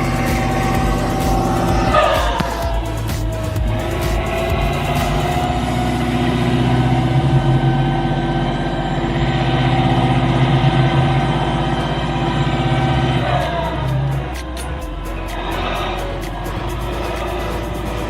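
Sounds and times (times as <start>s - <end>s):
heavy vehicle engine running: 0.0s - 18.0s
high-pitched whine: 0.0s - 18.0s.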